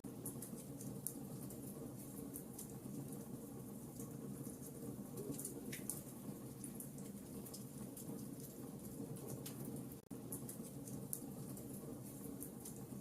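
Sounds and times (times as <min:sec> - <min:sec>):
burning charcoal crackling: 0:00.0 - 0:13.0.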